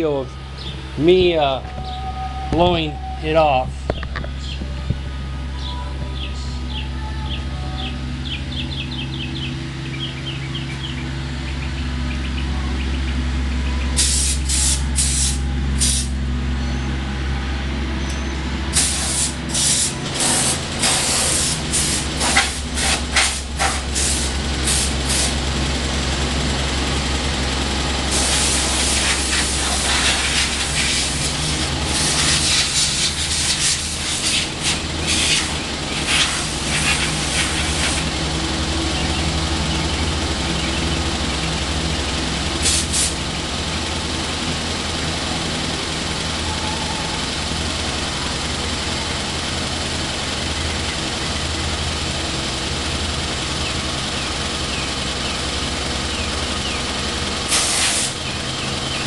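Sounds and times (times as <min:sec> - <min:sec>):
steady engine hum: 0:00.0 - 0:59.0
compressed air blow gun hissing: 0:14.0 - 0:16.1, 0:18.7 - 0:25.4, 0:28.1 - 0:38.1, 0:42.6 - 0:43.2, 0:57.5 - 0:58.2.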